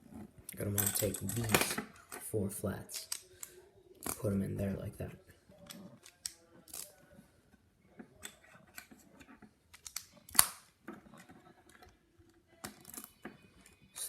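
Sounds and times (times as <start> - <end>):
plastic bricks clicking: 9.7 - 10.6
plastic brick snap: 9.7 - 10.7.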